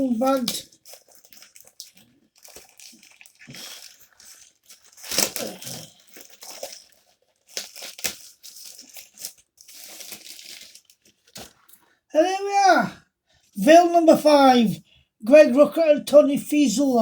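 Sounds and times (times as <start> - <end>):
plastic bag crinkling: 0.0 - 11.8.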